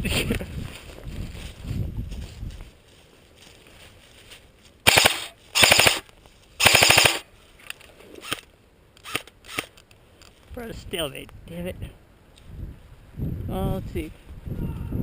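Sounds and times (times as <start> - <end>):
airsoft gun rapid-fire bursts: 4.9 - 6.0, 6.6 - 7.2.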